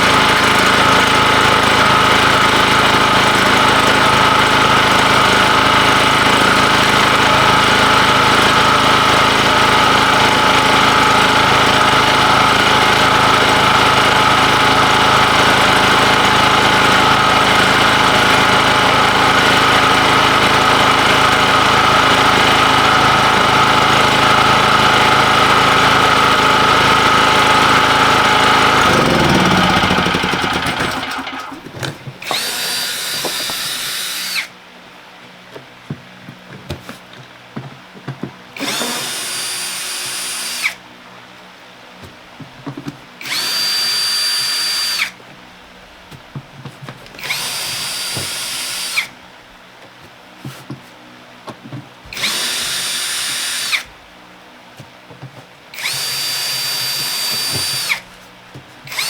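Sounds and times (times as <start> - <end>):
machine running and winding down: 0.0 - 31.6, 43.2 - 44.0, 55.8 - 58.0
power drill whining: 0.0 - 34.5, 38.6 - 40.8, 43.2 - 45.2, 47.1 - 49.2, 52.1 - 54.0, 55.8 - 58.2.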